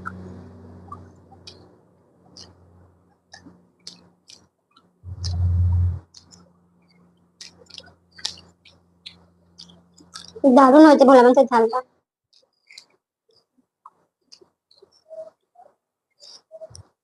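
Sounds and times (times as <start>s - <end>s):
person chewing and lip smacking: 2.3s - 2.6s, 3.3s - 5.5s, 7.4s - 10.4s.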